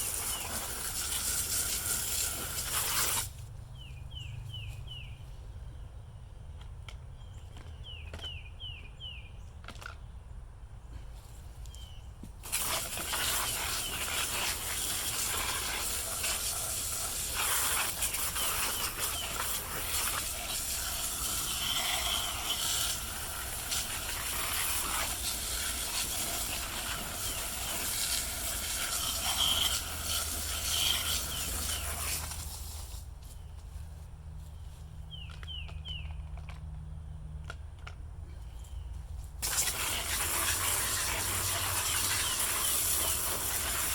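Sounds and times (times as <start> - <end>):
high-pressure water spray hissing: 0.0 - 3.3, 12.4 - 32.8, 39.4 - 43.9.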